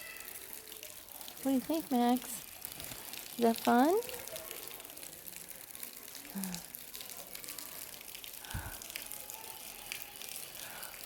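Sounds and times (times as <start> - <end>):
small waterfall splashing into pool: 0.0 - 11.0.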